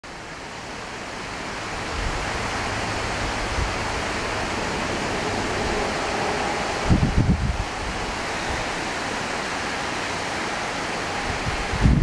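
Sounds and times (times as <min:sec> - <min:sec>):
waterfall rushing: 0:00.0 - 0:12.0
wind on microphone: 0:01.8 - 0:09.4, 0:11.1 - 0:12.0.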